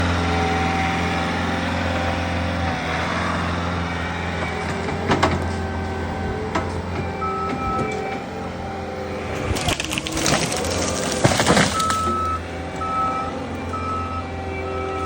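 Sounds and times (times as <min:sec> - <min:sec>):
skid steer engine running: 0:00.0 - 0:15.0
sharp cracks: 0:09.4 - 0:12.3.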